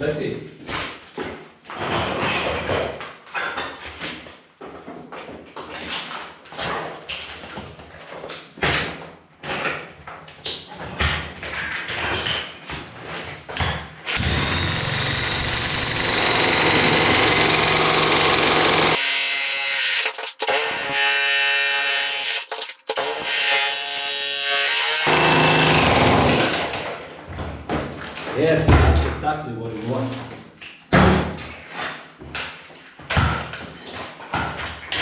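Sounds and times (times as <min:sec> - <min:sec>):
demolition hammer chiselling concrete: 0:14.1 - 0:26.9.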